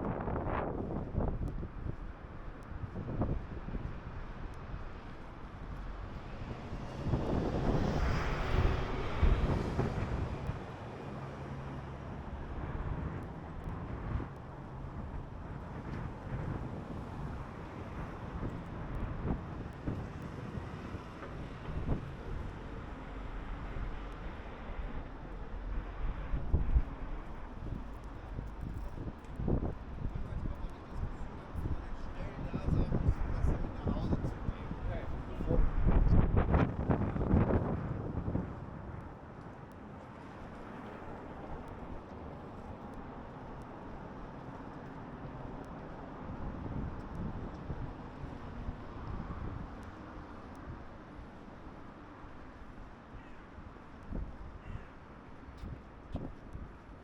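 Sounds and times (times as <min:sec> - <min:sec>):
wind on microphone: 0:00.0 - 0:11.3, 0:12.0 - 0:39.4, 0:45.5 - 0:51.2
traffic rumble: 0:00.0 - 0:57.0.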